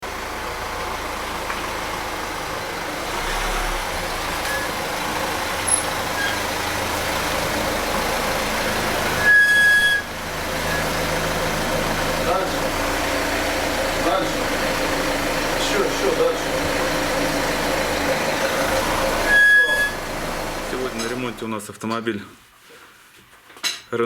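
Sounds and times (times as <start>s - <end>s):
motor vehicle noise: 0.0s - 21.5s
short high-pitched squeal: 5.7s - 6.4s, 9.2s - 10.1s, 19.2s - 20.0s.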